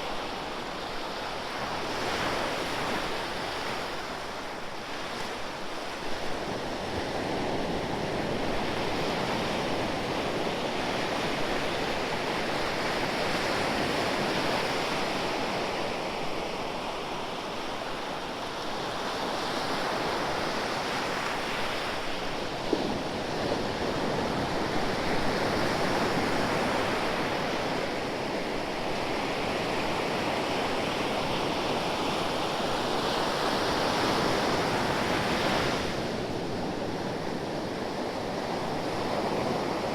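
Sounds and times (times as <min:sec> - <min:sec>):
ocean waves breaking on shore: 0:00.0 - 0:39.9.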